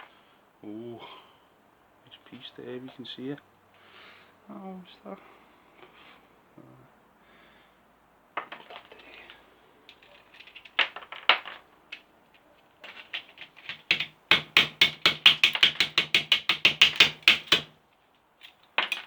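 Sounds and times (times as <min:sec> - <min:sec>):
hammer tapping on plastic: 0:13.6 - 0:17.8.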